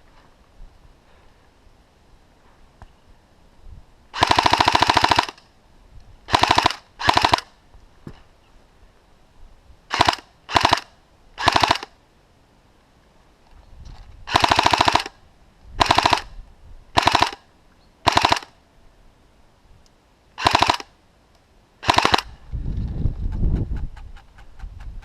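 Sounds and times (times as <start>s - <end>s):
airsoft gun firing bursts: 4.2s - 5.4s, 6.3s - 7.5s, 9.9s - 12.0s, 14.3s - 15.2s, 15.8s - 16.3s, 17.0s - 17.4s, 18.0s - 18.5s, 20.4s - 20.9s, 21.8s - 22.4s.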